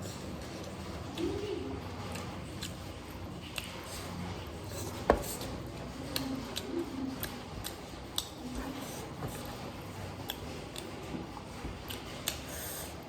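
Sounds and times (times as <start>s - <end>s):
eating clicks and crunches: 0.5s - 4.3s, 6.0s - 8.5s, 10.1s - 12.5s.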